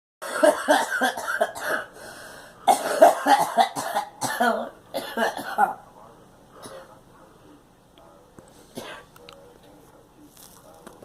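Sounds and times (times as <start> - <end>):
girl coughing: 0.2 - 1.9, 2.7 - 5.8.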